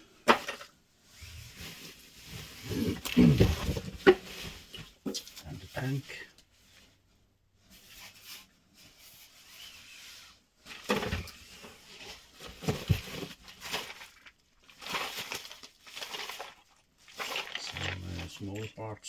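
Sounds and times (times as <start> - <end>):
packaging rustling and crinkling: 1.2 - 6.0, 9.2 - 18.8.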